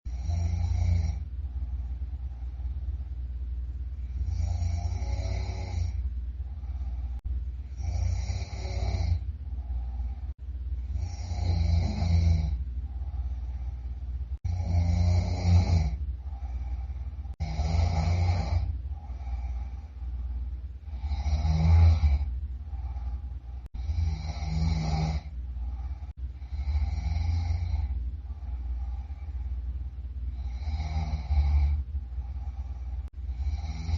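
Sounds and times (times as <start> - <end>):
quiet breathing: 0.0 - 33.9
person snoring loudly: 0.1 - 1.3, 4.0 - 6.0, 6.7 - 10.1, 10.8 - 13.6, 14.4 - 19.8, 20.8 - 28.0, 30.3 - 33.9.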